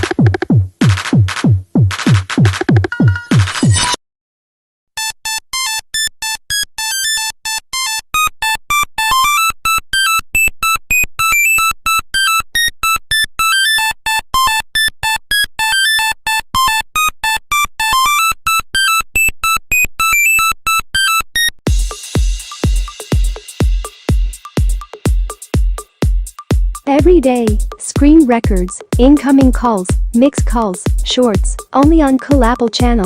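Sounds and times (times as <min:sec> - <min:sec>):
electronic drum-beat music: 0:00.0 - 0:03.7, 0:21.7 - 0:33.0
phone ringtone beeping melody: 0:02.9 - 0:03.4, 0:05.0 - 0:21.5.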